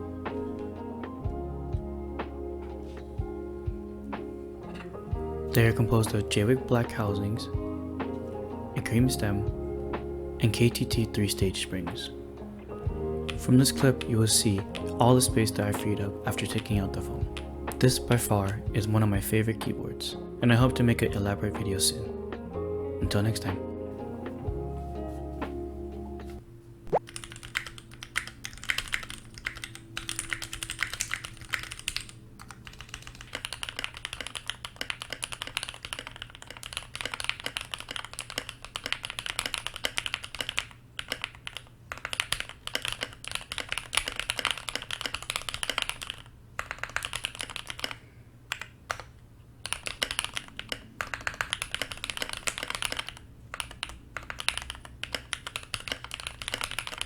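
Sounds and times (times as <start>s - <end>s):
mechanical keyboard typing: 13.2s - 19.8s, 26.9s - 57.0s.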